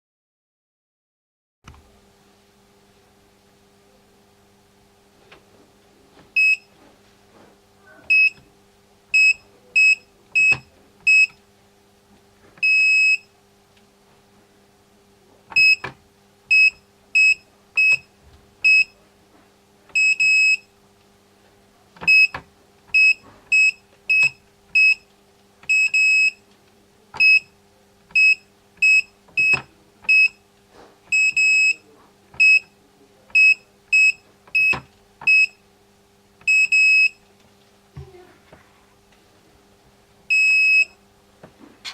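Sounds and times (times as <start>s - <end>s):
alarm keypad beeps: 6.4s - 6.7s, 8.1s - 8.4s, 9.2s - 11.4s, 12.6s - 13.3s, 15.5s - 15.9s, 16.5s - 19.0s, 20.0s - 20.7s, 22.0s - 22.4s, 23.0s - 25.1s, 25.7s - 26.4s, 27.2s - 27.5s, 28.1s - 30.4s, 31.1s - 31.8s, 32.4s - 32.7s, 33.4s - 35.6s, 36.5s - 37.2s, 40.3s - 41.0s
longer keypad beeps: 6.4s - 6.7s, 8.1s - 8.4s, 9.2s - 11.4s, 12.6s - 13.3s, 15.5s - 15.9s, 16.5s - 19.0s, 20.0s - 20.7s, 22.0s - 25.1s, 25.7s - 26.4s, 27.2s - 27.5s, 28.1s - 30.4s, 31.1s - 31.8s, 32.4s - 32.7s, 33.3s - 35.6s, 36.4s - 37.2s, 40.3s - 41.0s.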